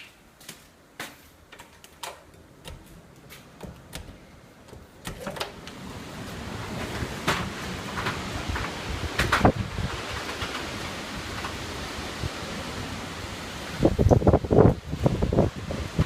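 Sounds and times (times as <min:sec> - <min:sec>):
light clicks and knocks: 0:01.5 - 0:05.8
strong wind rushing: 0:05.6 - 0:16.0.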